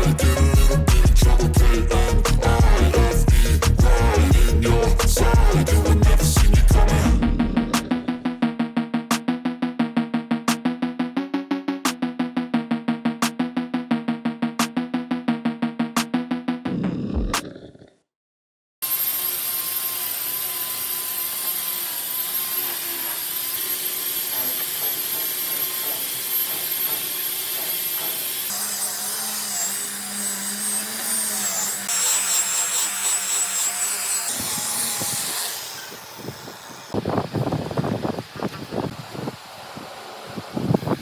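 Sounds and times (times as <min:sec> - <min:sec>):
power tool whining: 0:18.8 - 0:41.0.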